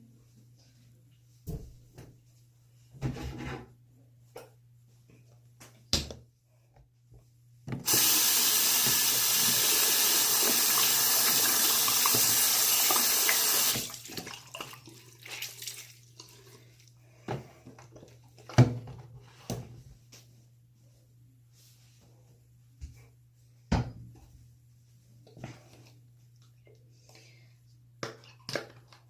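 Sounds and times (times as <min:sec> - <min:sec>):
water tap running into sink: 0:07.8 - 0:16.2.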